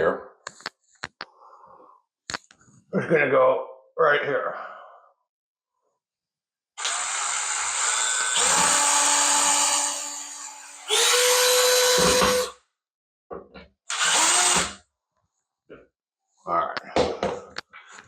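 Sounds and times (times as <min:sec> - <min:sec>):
power drill whining: 0:06.8 - 0:12.6, 0:13.9 - 0:14.8.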